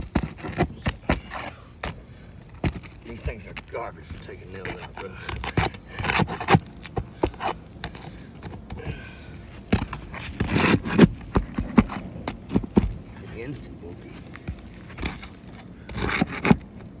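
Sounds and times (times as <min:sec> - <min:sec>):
metal tool scraping shingles: 0:14.9 - 0:16.6.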